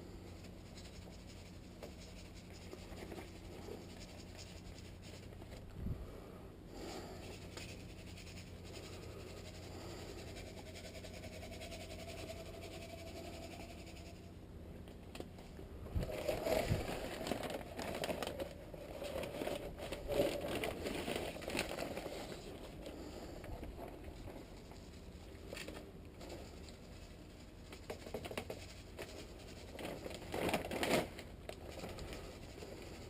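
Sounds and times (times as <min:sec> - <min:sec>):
crinkling: 0:14.8 - 0:33.0.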